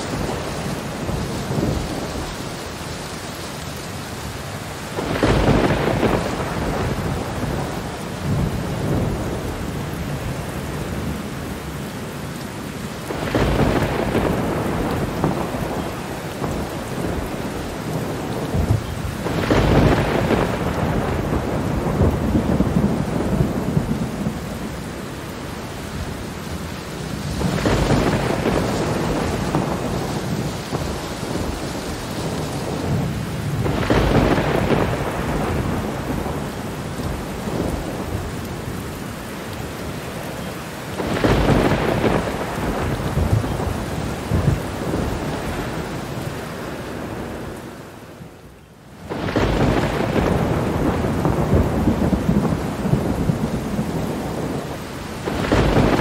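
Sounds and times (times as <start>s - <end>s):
heavy rain: 0.0s - 56.0s
thunder rolling: 5.0s - 10.3s, 13.0s - 24.6s, 27.1s - 38.8s, 41.0s - 45.9s, 49.1s - 56.0s.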